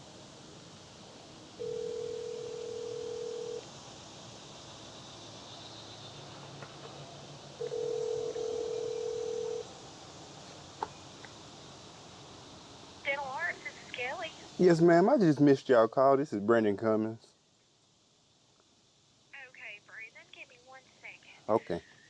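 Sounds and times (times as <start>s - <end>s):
telephone ringback tone: 1.6s - 3.6s, 7.6s - 9.6s.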